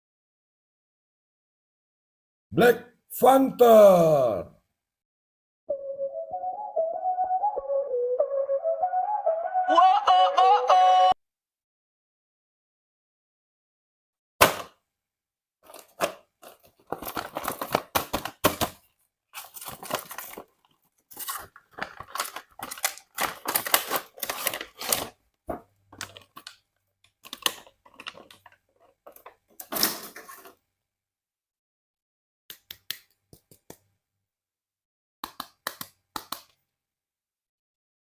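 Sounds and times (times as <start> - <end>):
packaging tearing and crinkling: 15.6 - 18.8, 19.4 - 25.2, 26.0 - 26.6, 27.2 - 28.6.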